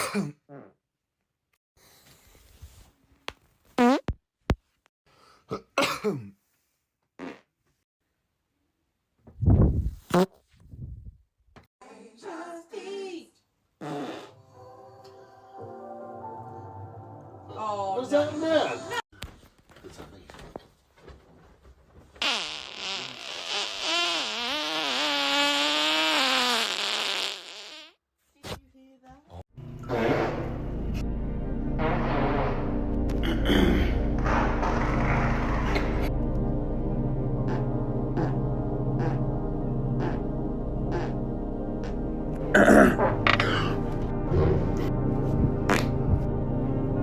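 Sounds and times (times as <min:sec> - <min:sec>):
farts: 0:03.8 - 0:04.1, 0:07.2 - 0:07.5, 0:13.8 - 0:14.4, 0:22.2 - 0:28.0, 0:29.8 - 0:31.0, 0:37.5 - 0:38.4, 0:39.0 - 0:39.2, 0:40.0 - 0:40.3, 0:40.9 - 0:41.2, 0:45.7 - 0:46.0.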